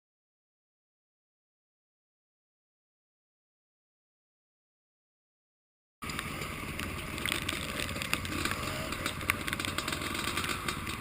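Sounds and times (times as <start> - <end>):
dirt bike engine running: 6.0 - 11.0
sharp ticks: 6.0 - 11.0.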